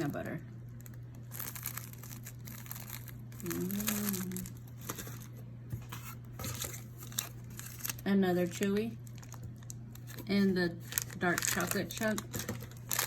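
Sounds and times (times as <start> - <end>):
short low hum: 0.0 - 11.0
steady low hum: 0.0 - 13.0
plastic wrappers crinkling: 0.1 - 5.3, 6.0 - 8.0, 8.6 - 13.0.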